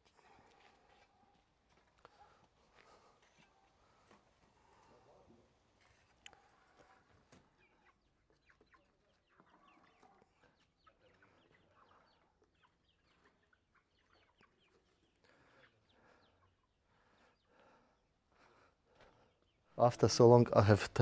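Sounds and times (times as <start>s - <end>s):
chickens clucking: 6.3s - 21.0s.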